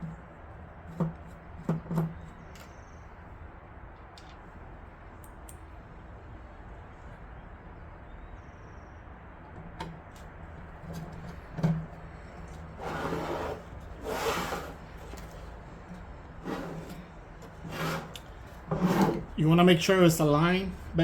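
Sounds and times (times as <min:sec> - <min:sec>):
board scraping slides: 0:10.9 - 0:19.4.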